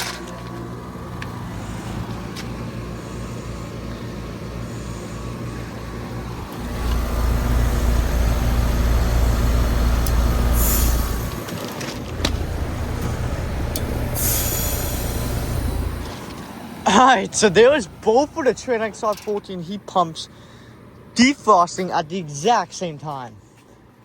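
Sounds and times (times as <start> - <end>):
heat pump humming with hiss: 0.0 - 21.6
loud low rumble: 6.1 - 16.4.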